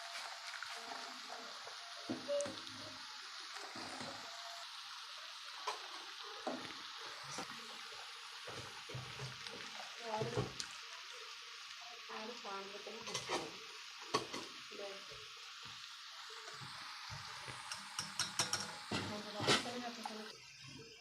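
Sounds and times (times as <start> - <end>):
liquid pouring hiss: 0.0 - 21.0
metal pots and utensils knocking: 17.7 - 19.7.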